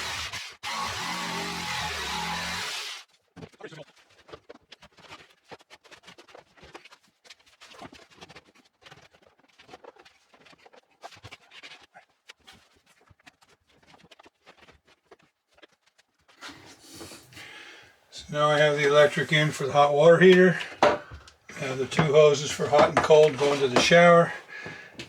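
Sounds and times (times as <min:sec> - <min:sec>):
faint knocks and clatter: 0:20.3 - 0:25.0.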